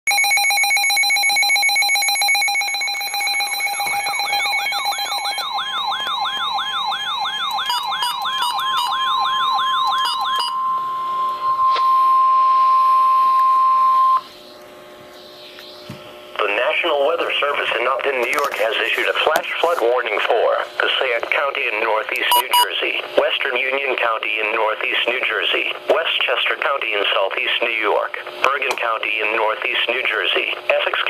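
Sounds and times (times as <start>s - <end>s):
steady alarm tone: 0.1s - 17.9s, 22.2s - 22.7s
rapid buzzing beep: 0.2s - 14.3s, 22.3s - 22.7s
warbling siren tone: 2.4s - 15.9s.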